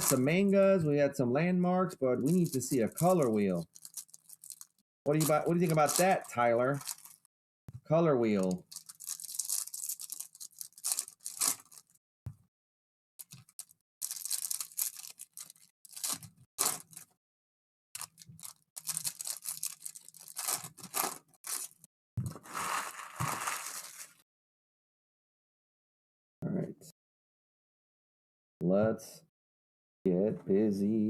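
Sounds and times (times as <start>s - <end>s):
foil wrappers tearing and crinkling: 0.0s - 0.4s, 2.2s - 7.3s, 8.4s - 12.0s, 13.2s - 17.1s, 18.0s - 24.2s.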